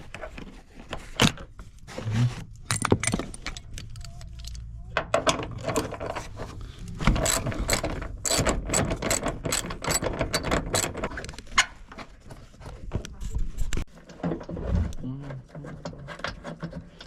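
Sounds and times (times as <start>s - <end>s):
socket ratchet clicking: 7.2s - 11.0s.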